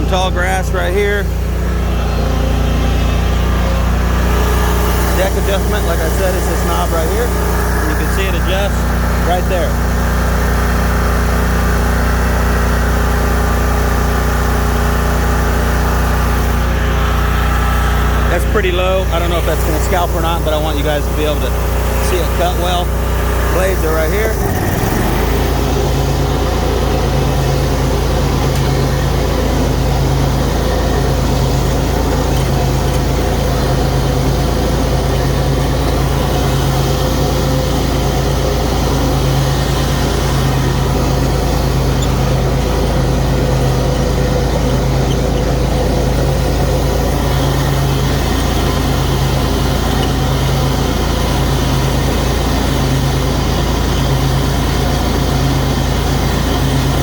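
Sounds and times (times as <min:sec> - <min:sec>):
lawn mower engine running: 0:00.0 - 0:57.0.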